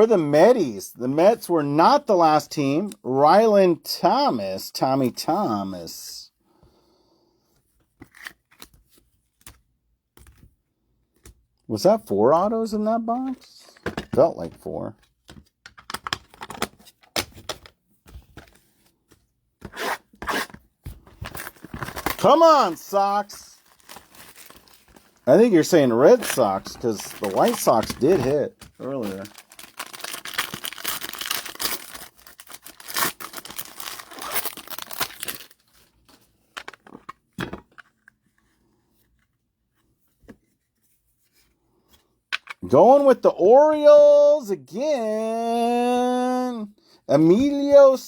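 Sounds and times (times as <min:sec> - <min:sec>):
cards rustling: 0:13.0 - 0:19.8, 0:20.4 - 0:39.4
foil wrapper crinkling and tearing: 0:21.3 - 0:36.1.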